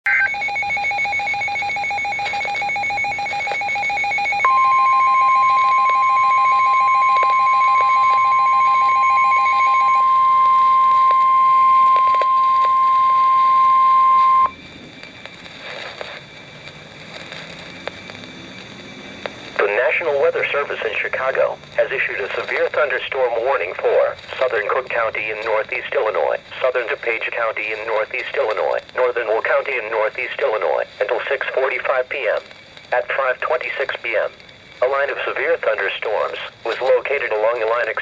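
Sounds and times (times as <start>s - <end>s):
steady warning alarm tone: 0.0s - 38.0s
rapid electronic beeping: 0.1s - 17.0s
faint background noise: 0.1s - 38.0s.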